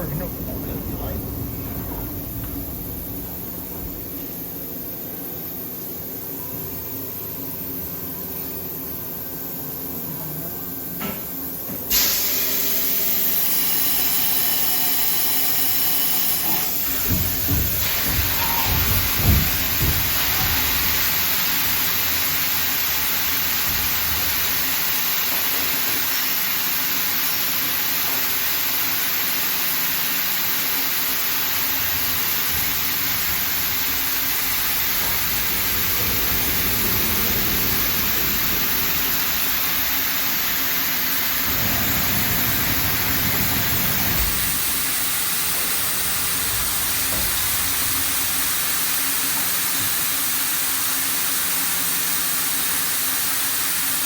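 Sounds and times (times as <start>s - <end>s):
low machine hum: 0.0s - 7.2s, 31.2s - 49.2s
machine loud steady hiss: 0.0s - 54.0s.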